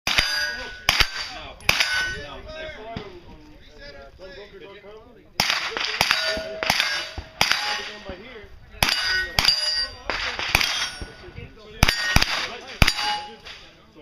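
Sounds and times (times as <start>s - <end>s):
gunshots: 0.1s - 2.2s, 5.4s - 8.2s, 8.8s - 13.7s
steel plate clanging: 0.1s - 2.4s, 6.0s - 8.1s, 8.8s - 13.6s.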